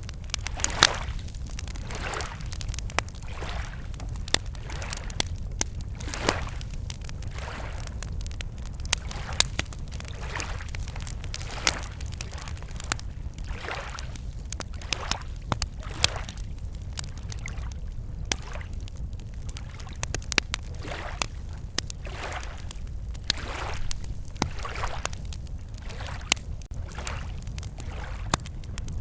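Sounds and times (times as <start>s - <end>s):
campfire crackling and popping: 0.0s - 29.0s
small waves lapping at shore: 0.4s - 5.3s, 6.0s - 7.9s, 9.0s - 16.4s, 20.7s - 28.4s.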